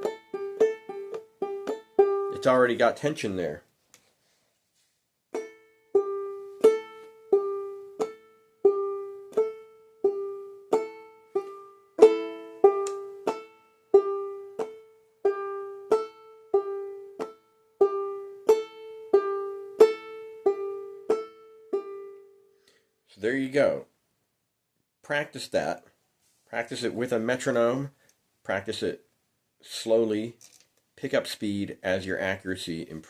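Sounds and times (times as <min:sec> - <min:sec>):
banjolele plucked notes: 0:00.0 - 0:03.3, 0:05.3 - 0:22.5.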